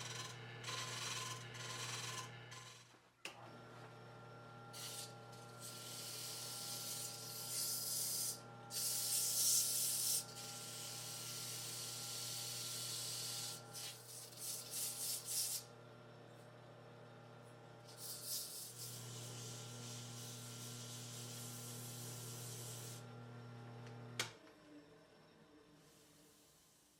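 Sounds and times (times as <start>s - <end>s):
sandpaper rubbing spinning wood: 0.0s - 2.8s, 4.8s - 15.7s, 17.9s - 23.0s
wood lathe humming: 0.0s - 24.2s.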